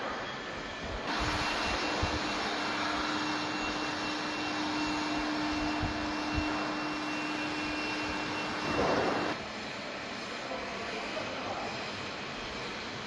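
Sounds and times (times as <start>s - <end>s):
melting furnace hum and whine: 0.0s - 13.0s
furnace rushing noise: 1.1s - 9.4s.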